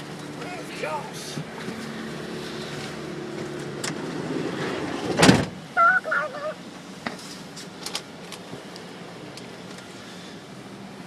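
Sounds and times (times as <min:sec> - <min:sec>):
vehicle door sliding shut: 0:05.0 - 0:05.6
short warbling tone: 0:05.8 - 0:06.6.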